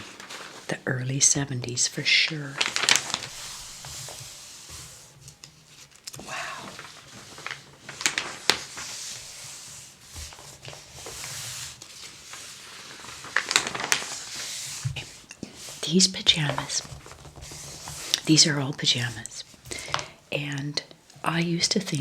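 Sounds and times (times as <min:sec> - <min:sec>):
paper pages turning: 0:00.0 - 0:20.2
paper snapping: 0:02.6 - 0:03.4, 0:05.4 - 0:08.9, 0:13.2 - 0:14.4.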